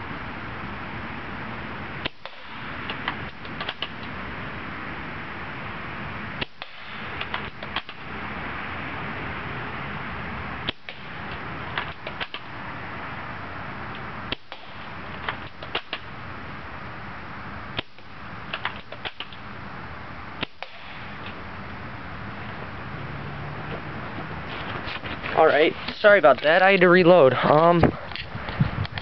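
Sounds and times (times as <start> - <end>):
steady background hiss: 0.0 - 29.0
airsoft rifle shots: 2.0 - 4.0, 6.4 - 8.1, 10.6 - 12.5, 14.3 - 16.1, 20.4 - 21.2.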